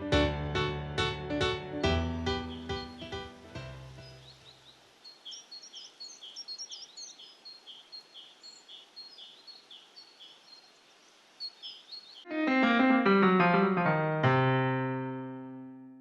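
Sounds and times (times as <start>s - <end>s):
piano notes: 0.0s - 4.2s, 12.3s - 16.0s
faint birdsong chirping: 1.8s - 12.3s.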